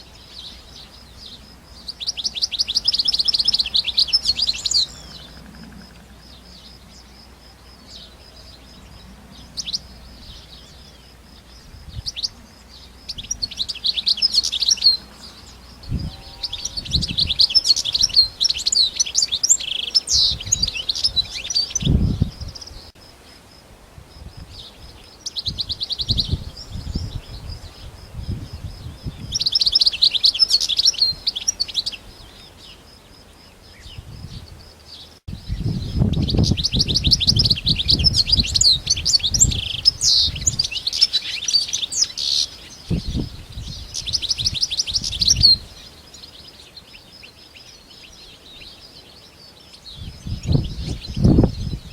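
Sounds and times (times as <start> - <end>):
goldfinch twittering chirps and trills: 0.1 - 22.9, 24.4 - 51.9.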